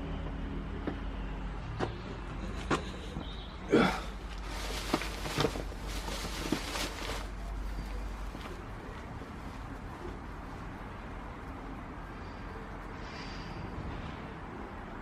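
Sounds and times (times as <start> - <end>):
knocks and rustling of handling: 4.2 - 10.6.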